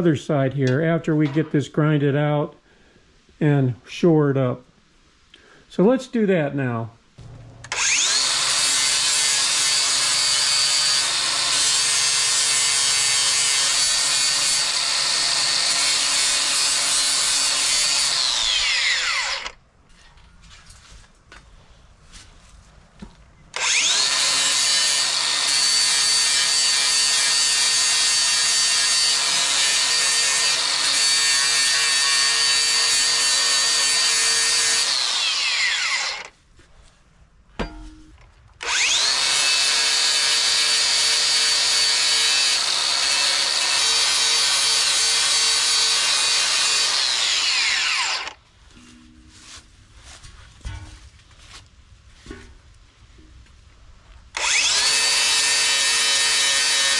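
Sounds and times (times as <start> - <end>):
angle grinder grinding steel: 7.7 - 19.6, 23.6 - 36.3, 38.6 - 48.4, 54.4 - 56.9.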